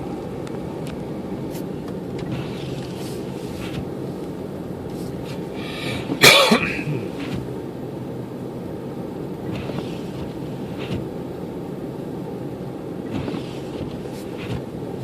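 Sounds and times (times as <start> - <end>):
car driving noise: 0.0 - 15.0
loud cough: 6.2 - 7.0.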